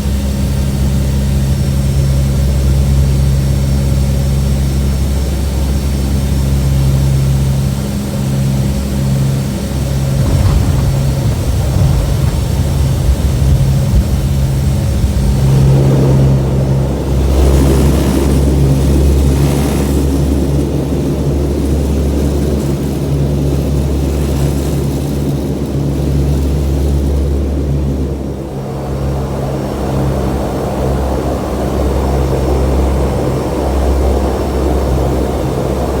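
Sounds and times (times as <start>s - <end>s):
turboprop engines droning: 0.0s - 36.0s
rush of noise: 8.7s - 20.2s.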